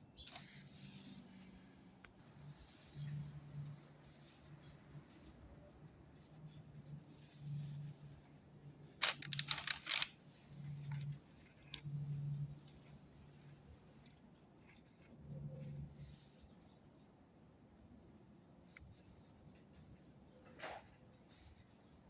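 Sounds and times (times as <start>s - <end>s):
plastic spreader scraping: 9.0s - 10.1s.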